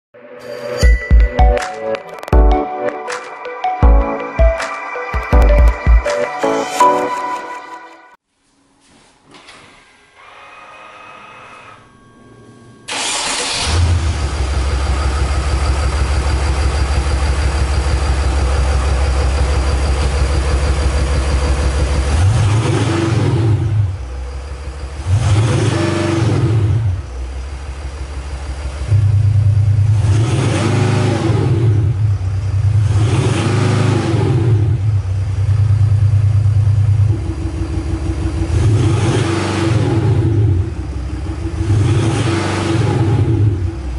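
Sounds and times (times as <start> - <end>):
diesel engine idling and revving: 11.4 - 43.9.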